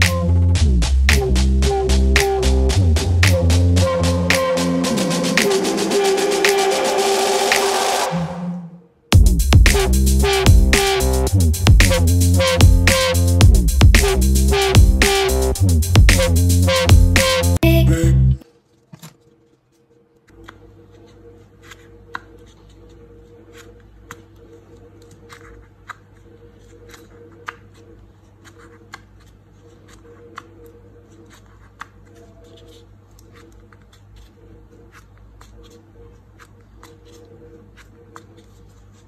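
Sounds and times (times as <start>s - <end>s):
paper rustling: 18.4s - 39.0s.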